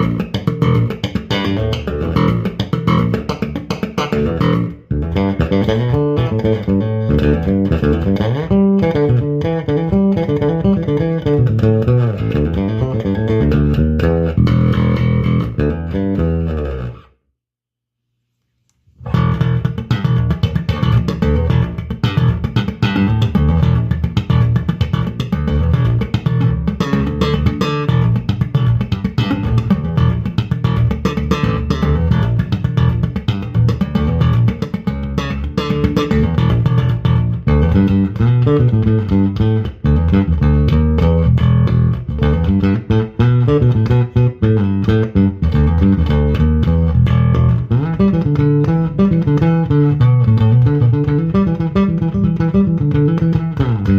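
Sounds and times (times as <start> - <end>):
electric bass guitar plucking: 0.0 - 17.2, 19.0 - 53.9.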